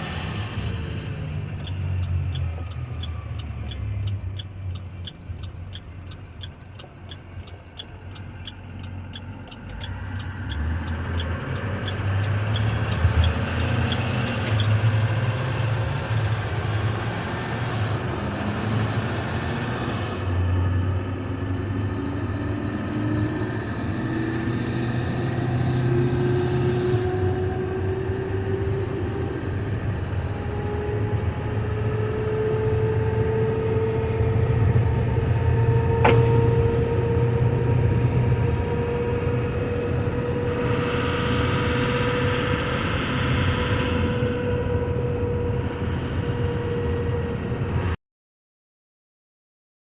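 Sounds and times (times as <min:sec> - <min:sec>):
dump truck engine running: 0:00.0 - 0:24.8
fast regular ticking: 0:01.6 - 0:14.8
rising whine: 0:01.6 - 0:20.8, 0:22.1 - 0:48.0.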